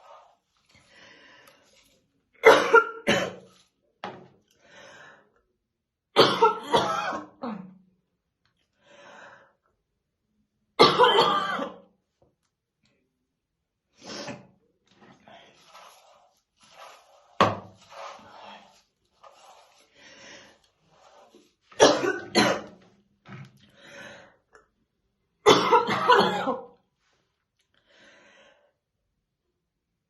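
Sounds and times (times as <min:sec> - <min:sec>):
woman coughing: 0:02.4 - 0:03.4, 0:06.2 - 0:07.8, 0:10.8 - 0:11.8, 0:21.8 - 0:22.8, 0:25.5 - 0:26.8.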